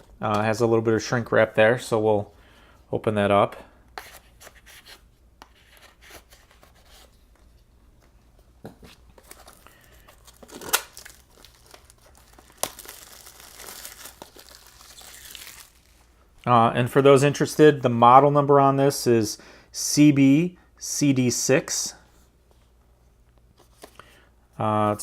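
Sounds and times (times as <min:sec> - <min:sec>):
plastic shrink wrap crinkling: 0:09.1 - 0:16.2
shrink wrap tearing: 0:09.3 - 0:16.1.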